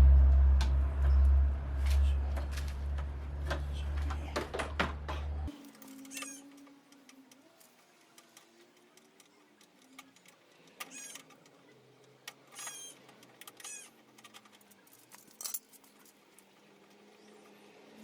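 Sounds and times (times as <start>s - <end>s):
hand tools clinking on metal: 8.1s - 16.5s.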